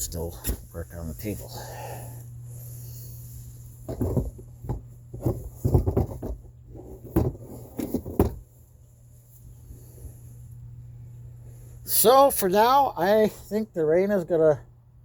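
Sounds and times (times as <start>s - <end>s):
steady low hum: 0.0s - 15.0s
knocks and bumps on wood: 3.9s - 8.4s.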